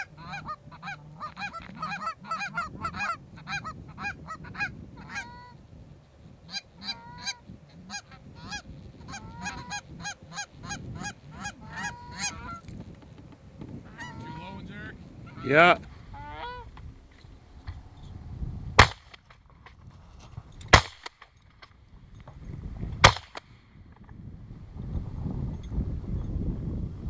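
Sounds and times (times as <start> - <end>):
goose honking: 0.0 - 5.6, 6.5 - 12.6, 13.8 - 16.7.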